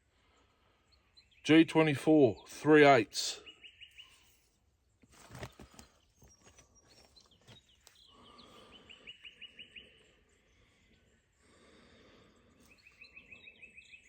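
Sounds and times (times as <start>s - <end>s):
small bird chirping: 3.4s - 4.5s, 5.8s - 11.1s, 12.5s - 14.0s.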